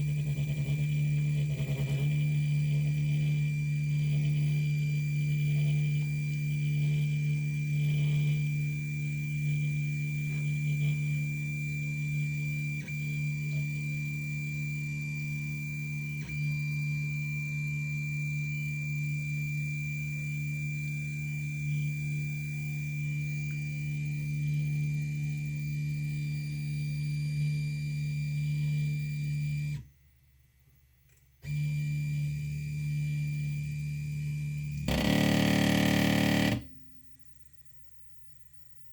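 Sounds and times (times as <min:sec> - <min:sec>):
stepper motor whining: 0:34.8 - 0:36.7.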